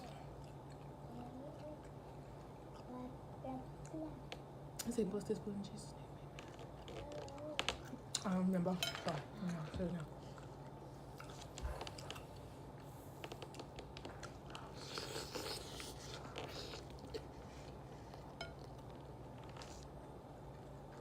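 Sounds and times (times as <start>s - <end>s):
person chewing: 0.0s - 2.9s, 13.2s - 21.0s.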